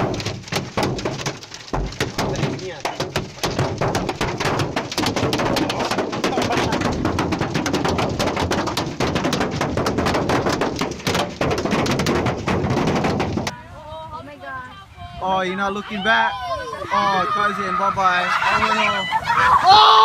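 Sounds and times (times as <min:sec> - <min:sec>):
rapid clatter of sharp impacts: 0:00.0 - 0:13.6.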